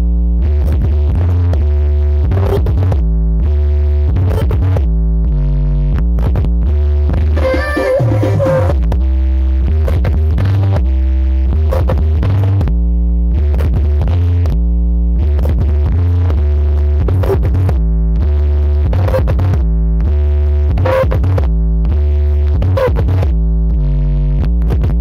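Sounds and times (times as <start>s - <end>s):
loud electronic dance music: 6.0s - 14.6s, 15.2s - 25.0s.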